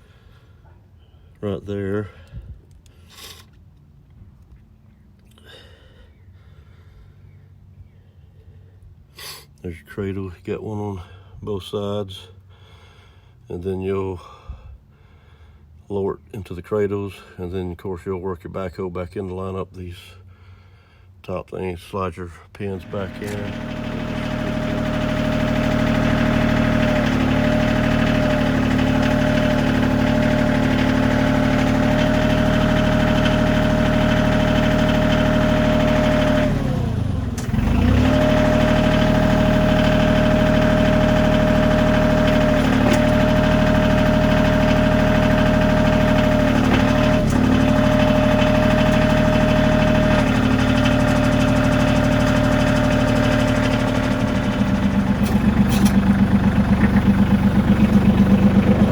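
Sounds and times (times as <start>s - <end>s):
backhoe hydraulics: 2.9s - 3.5s, 22.8s - 58.9s
tractor diesel engine running: 22.6s - 58.9s.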